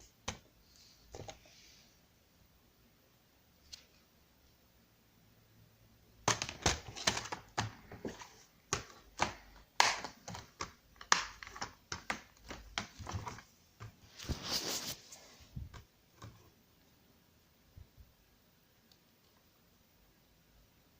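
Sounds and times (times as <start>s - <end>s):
short rustle: 14.1s - 15.5s.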